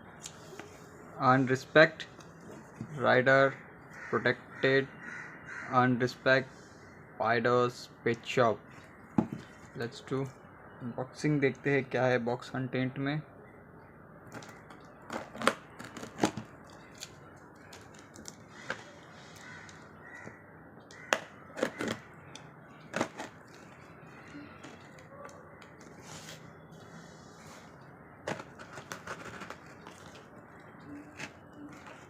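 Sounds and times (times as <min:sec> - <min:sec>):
packaging cracking and crinkling: 0:14.3 - 0:19.8, 0:28.3 - 0:32.0.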